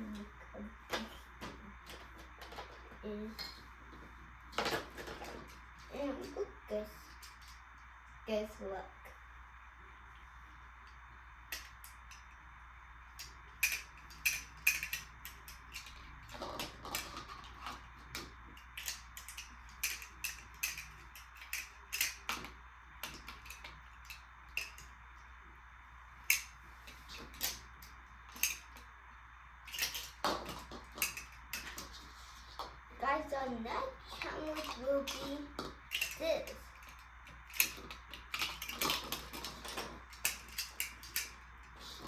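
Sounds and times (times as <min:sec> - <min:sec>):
steady low hum: 0:00.0 - 0:42.0
glass marbles clattering on track: 0:13.2 - 0:17.8, 0:29.7 - 0:31.9.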